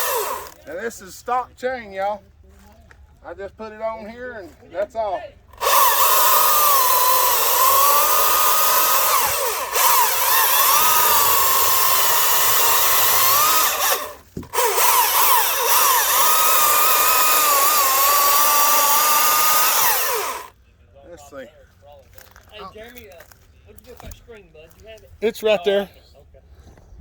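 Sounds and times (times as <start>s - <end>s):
chainsaw cutting small trees: 0.0s - 0.9s, 5.5s - 20.6s.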